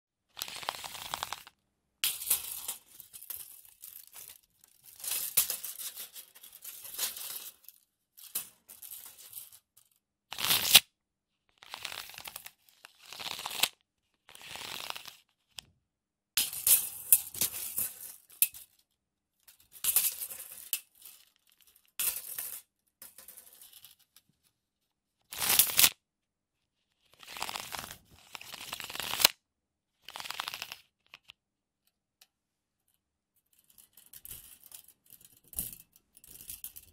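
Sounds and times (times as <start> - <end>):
tape measure rattling and scraping: 0.4 - 10.8, 19.6 - 24.2, 25.3 - 26.0, 27.0 - 29.4, 30.1 - 31.3.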